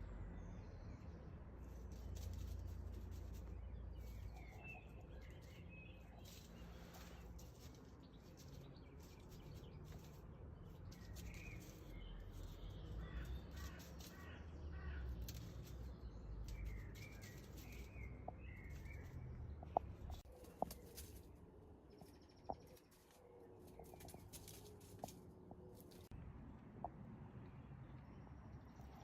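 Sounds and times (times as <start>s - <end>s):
birds chirping: 0.0s - 29.0s.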